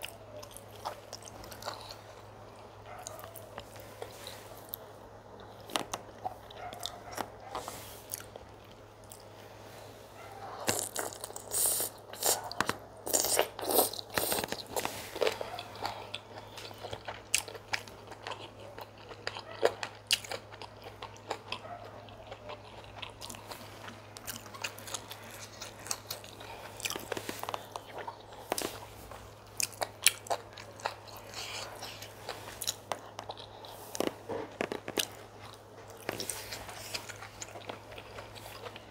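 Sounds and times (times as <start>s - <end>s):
wet chewing and biting: 10.3s - 38.9s.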